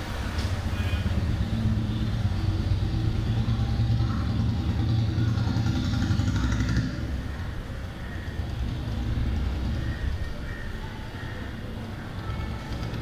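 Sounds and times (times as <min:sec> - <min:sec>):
vehicle engine low rumble: 0:00.0 - 0:13.0.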